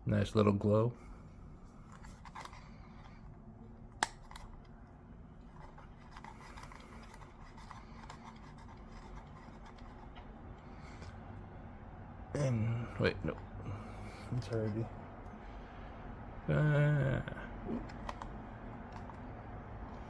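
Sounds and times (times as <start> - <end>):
small object rubbing and scraping: 5.5 - 10.3.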